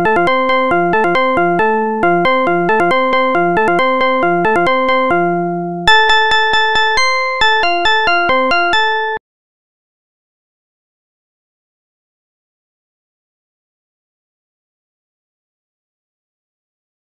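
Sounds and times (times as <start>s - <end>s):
electric piano alarm tune: 0.0s - 9.2s.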